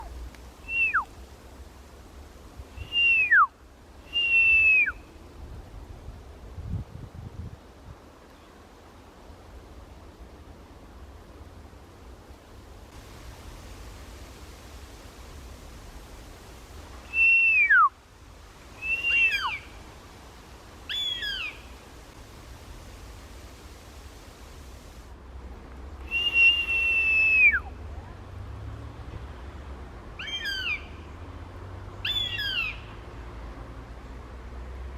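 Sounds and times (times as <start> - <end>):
person whistling hawk calls: 0.7 - 1.1, 2.8 - 3.5, 4.1 - 5.0, 17.1 - 17.9, 18.8 - 19.7, 26.1 - 27.7.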